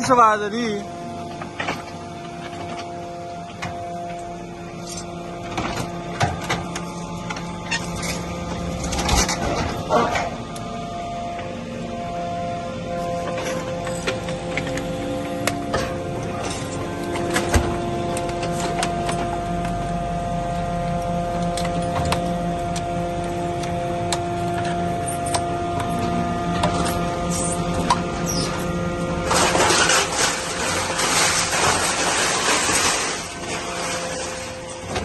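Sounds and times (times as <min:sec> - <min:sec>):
hydraulic hum of baler: 0:00.0 - 0:35.0
harsh metal clattering: 0:26.0 - 0:35.0.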